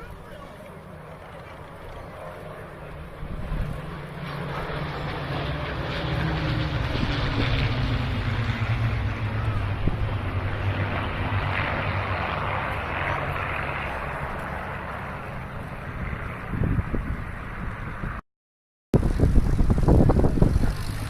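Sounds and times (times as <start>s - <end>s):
propeller aircraft engines droning: 0.0s - 18.2s, 19.0s - 21.0s
wind on microphone: 3.1s - 4.0s, 6.3s - 12.4s, 15.5s - 18.2s, 19.0s - 21.0s.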